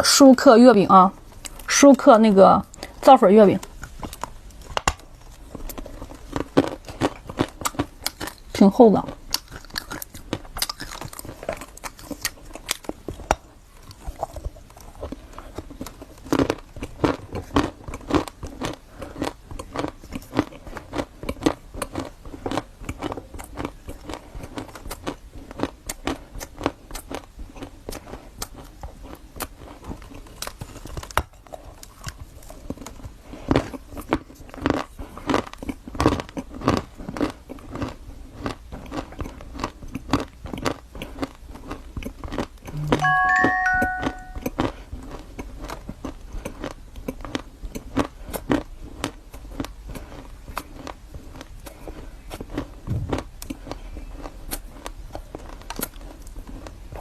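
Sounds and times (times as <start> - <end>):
crunching and chewing pastry: 1.1 - 2.0, 2.6 - 42.9, 43.9 - 57.0.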